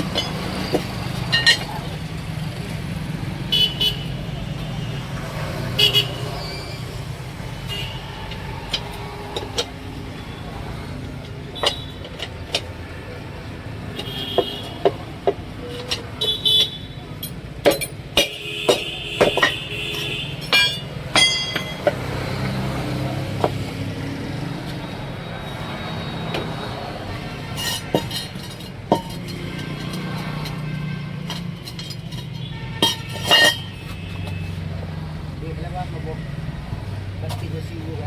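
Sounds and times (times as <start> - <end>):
metal tools clinking: 0.0 - 2.8, 6.0 - 23.9, 24.6 - 34.7
vehicle horn: 3.5 - 5.2, 5.8 - 6.6, 7.7 - 8.2, 14.0 - 14.9, 16.2 - 17.0, 18.3 - 20.8.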